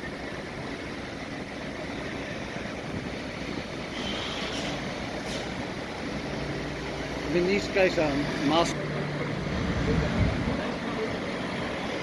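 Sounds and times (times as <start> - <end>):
low engine rumble: 0.0 - 12.0
faint high squeal: 3.9 - 4.8.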